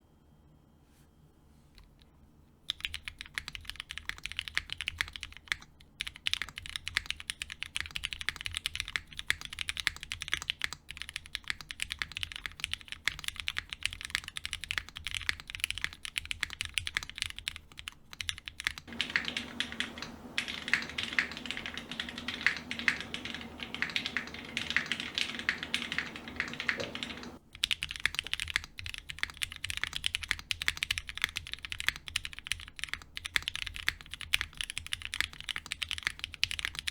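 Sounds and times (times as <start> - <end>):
fast typing on mechanical keyboard: 2.7 - 36.9
steady low hum: 18.9 - 27.4.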